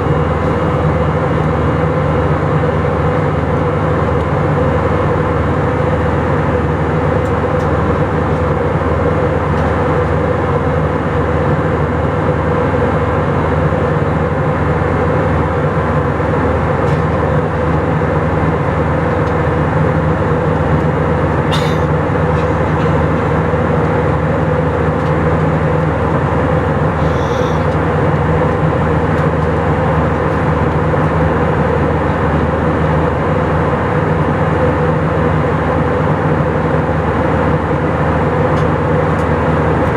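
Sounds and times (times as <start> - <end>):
jet engine drone in cabin: 0.0 - 39.9
low hum: 18.6 - 31.4
faint high tone: 27.0 - 27.8.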